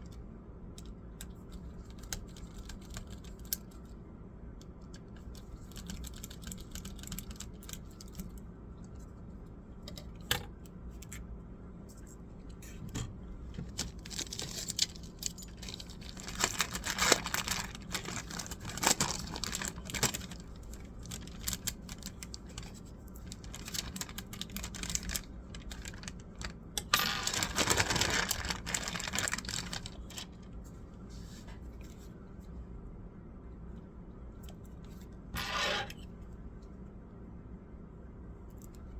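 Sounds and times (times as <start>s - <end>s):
steady low hum: 0.0s - 38.9s
rustling scrape: 26.9s - 32.1s, 35.4s - 36.1s.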